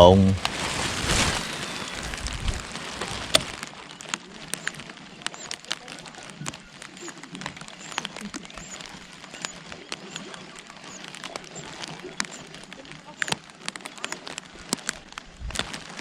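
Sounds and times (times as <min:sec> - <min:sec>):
heavy rain falling: 0:00.0 - 0:16.0
raindrops ticking close by: 0:00.0 - 0:16.0.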